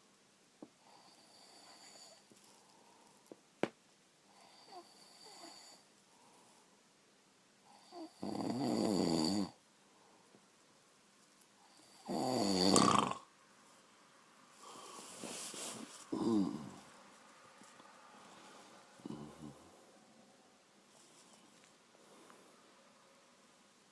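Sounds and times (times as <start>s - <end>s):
faint breathing: 0.8s - 3.3s, 4.3s - 6.9s, 13.7s - 20.0s, 20.9s - 23.0s
person snoring: 7.8s - 9.6s, 11.7s - 13.3s, 16.1s - 16.9s, 19.0s - 19.7s.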